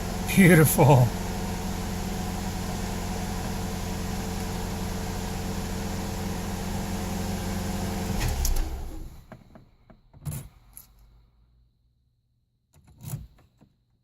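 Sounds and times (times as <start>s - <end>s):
car engine idling: 0.0s - 9.2s.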